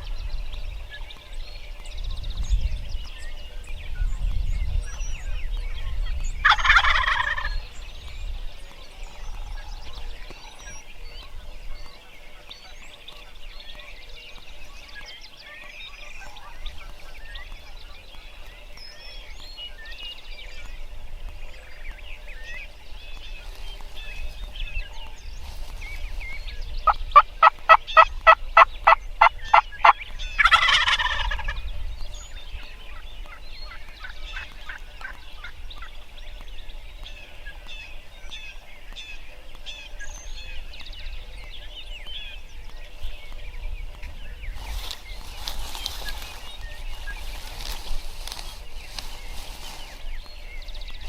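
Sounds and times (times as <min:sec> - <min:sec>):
small birds chirping: 0:00.0 - 0:51.0
turkey gobbling: 0:06.4 - 0:07.5, 0:27.2 - 0:31.6.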